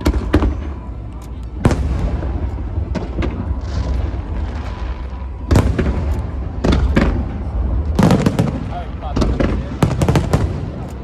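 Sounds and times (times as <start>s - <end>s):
steady low rumble: 0.0s - 11.0s
fireworks bursting in bangs: 1.6s - 11.0s.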